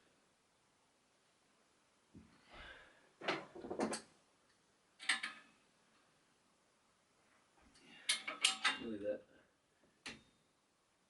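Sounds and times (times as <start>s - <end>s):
sharp clicks and clunks: 3.2s - 5.5s, 8.0s - 8.9s
bike parts and tools handled: 7.7s - 8.9s.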